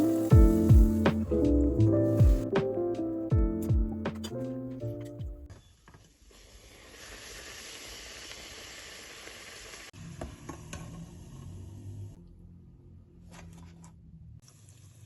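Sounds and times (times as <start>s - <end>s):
food sizzling in a pan: 0.0s - 1.1s, 6.4s - 10.0s.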